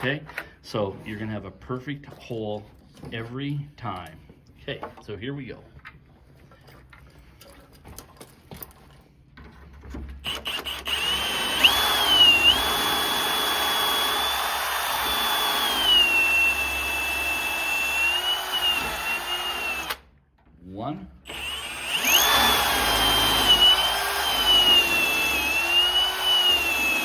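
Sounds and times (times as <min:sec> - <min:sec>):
power drill whining into wood: 0:10.2 - 0:20.1, 0:21.3 - 0:27.0.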